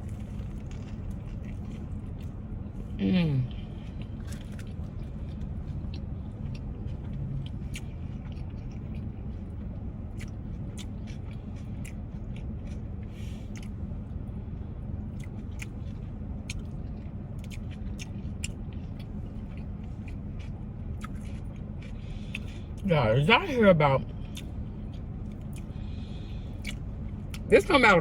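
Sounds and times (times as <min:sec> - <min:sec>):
steady low hum: 0:00.0 - 0:28.0
wet chewing mouth clicks: 0:10.1 - 0:12.8, 0:15.2 - 0:22.6, 0:24.2 - 0:25.8, 0:26.6 - 0:27.5.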